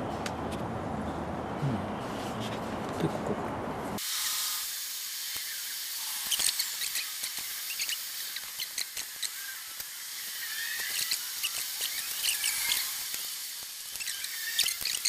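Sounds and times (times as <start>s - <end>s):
steady hiss: 4.0s - 15.0s
small parts clicking: 6.2s - 15.0s.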